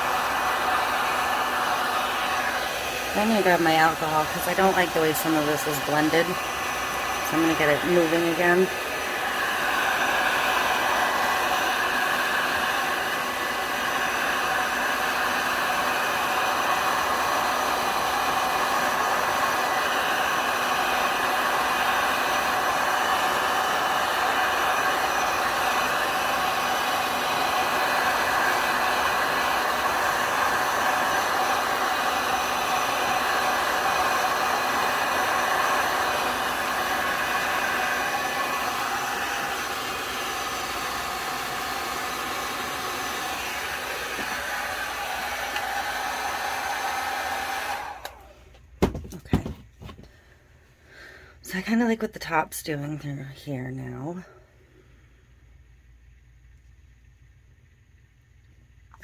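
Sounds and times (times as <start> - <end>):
heat gun blowing: 0.0 - 50.1.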